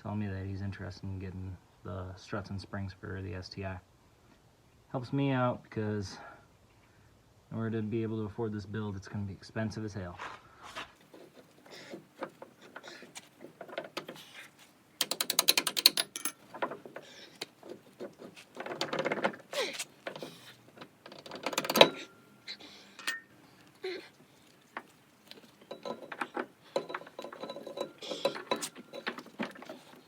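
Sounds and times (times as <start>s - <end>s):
metal clanks and rattles: 11.1s - 22.3s, 24.7s - 30.0s
ratchet wrench clicks: 15.0s - 16.4s.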